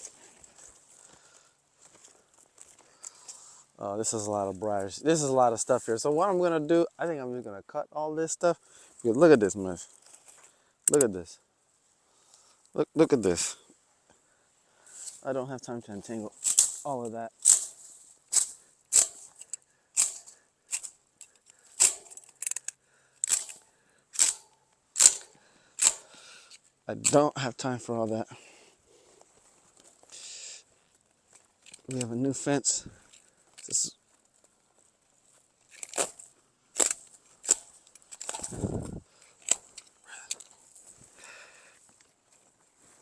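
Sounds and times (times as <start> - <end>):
rustles and rattles: 16.0 - 26.6, 32.8 - 41.2
hand cutters snipping: 16.4 - 26.1, 36.8 - 38.8.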